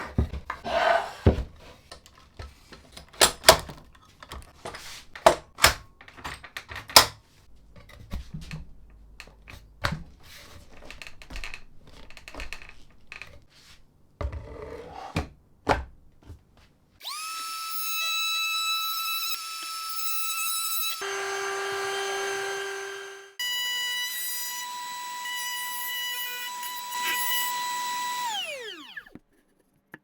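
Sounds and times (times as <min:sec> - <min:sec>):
power tool motor whining: 0:17.0 - 0:29.2.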